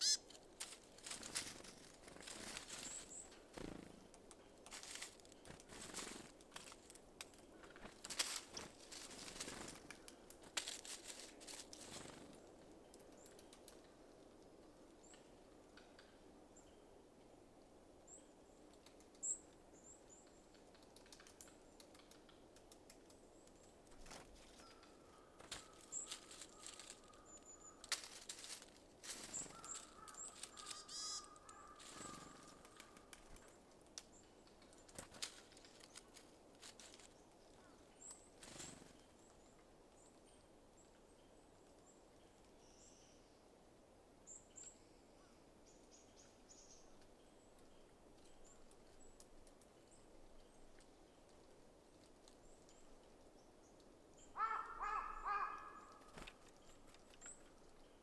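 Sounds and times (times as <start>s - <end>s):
small birds chirping: 0.0s - 6.8s, 18.1s - 43.4s, 44.3s - 58.0s
birds pecking at seed: 0.0s - 14.1s, 20.5s - 39.0s.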